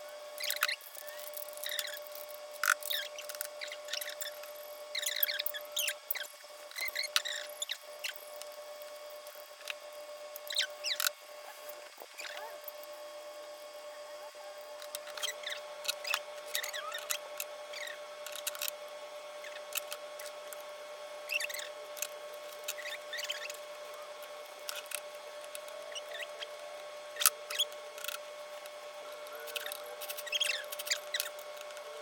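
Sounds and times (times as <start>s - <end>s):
faint steady hum: 0.0s - 32.0s
scratchy scrapes and squeaks: 0.4s - 8.6s, 9.6s - 13.0s, 14.8s - 20.6s, 21.2s - 32.0s.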